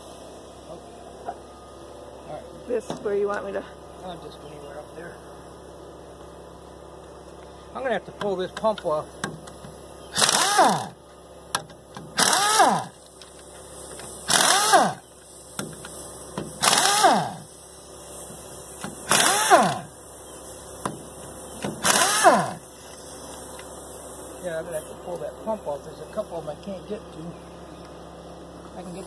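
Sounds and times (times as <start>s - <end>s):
power tool bursts: 10.1s - 11.0s, 12.1s - 13.0s, 13.8s - 17.6s, 18.8s - 20.0s, 20.8s - 22.8s.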